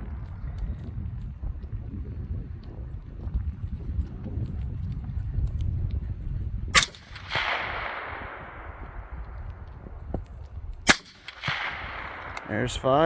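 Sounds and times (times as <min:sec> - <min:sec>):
rifle shots: 0:06.8 - 0:10.1, 0:10.8 - 0:13.0
gunshot echo: 0:06.8 - 0:13.0.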